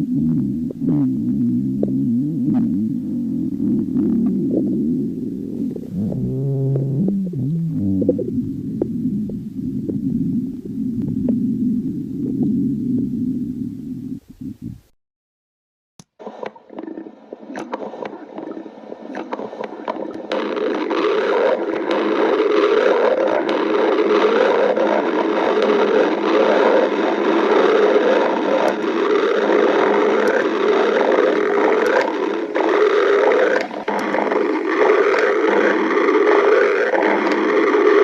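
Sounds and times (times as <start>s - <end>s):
stomach growling: 0.0s - 14.9s, 16.2s - 38.0s.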